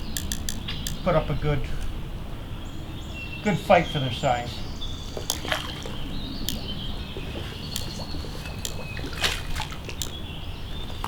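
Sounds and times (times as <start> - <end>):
sharp clicks: 0.0 - 1.2, 5.1 - 11.0
high bird chirps: 0.0 - 1.4, 4.5 - 11.0
creek water trickling: 0.0 - 11.0.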